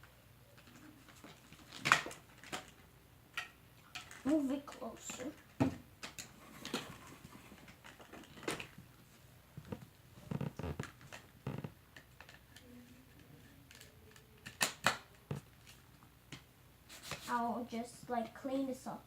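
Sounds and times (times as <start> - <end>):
plastic parts clicking and tapping: 0.6 - 8.8, 12.0 - 12.7, 13.6 - 16.5.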